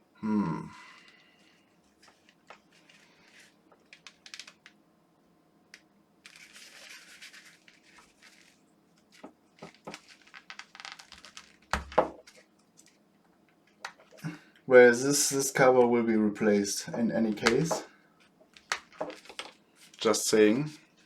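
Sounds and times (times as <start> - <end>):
plastic housing creaking and scraping: 9.6 - 12.4.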